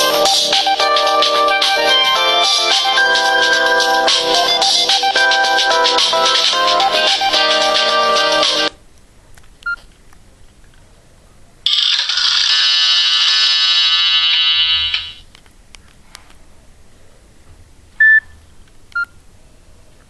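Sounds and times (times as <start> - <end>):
mobile phone ringtone: 0.0 - 8.7, 11.7 - 15.2.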